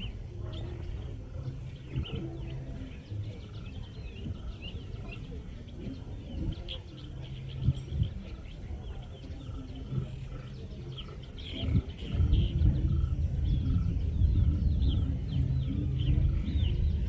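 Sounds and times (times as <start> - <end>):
birds chirping: 0.0 - 17.0
low rumble: 11.7 - 17.0.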